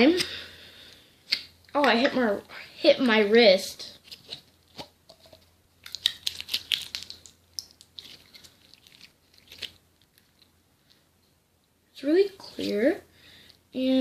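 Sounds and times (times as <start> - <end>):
slime squished crackling and popping: 4.0 - 10.6.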